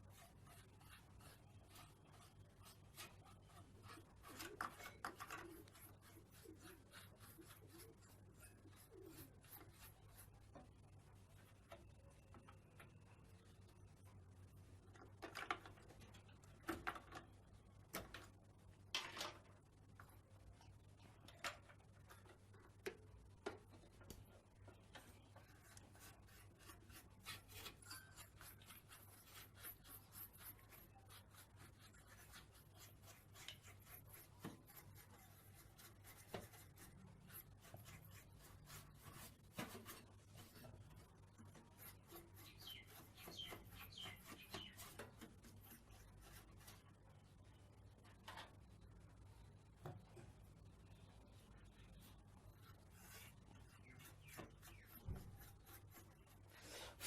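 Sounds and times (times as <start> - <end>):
brush rubbing on circuit board: 0.0 - 11.7, 24.6 - 46.9, 51.7 - 57.0.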